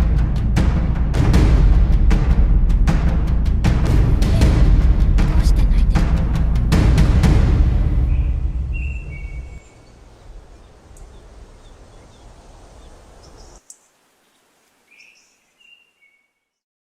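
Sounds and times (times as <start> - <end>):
low ambient rumble: 0.0 - 13.6.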